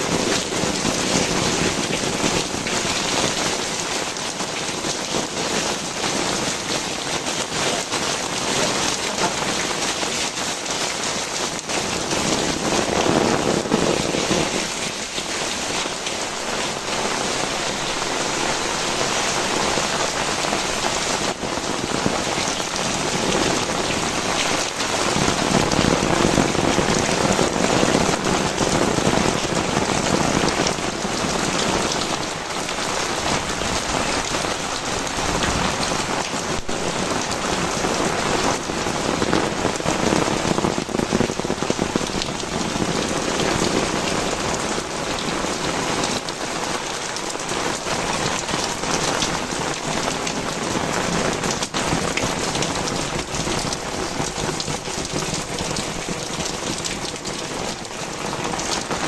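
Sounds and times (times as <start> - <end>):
heavy rain pouring: 0.0 - 59.0.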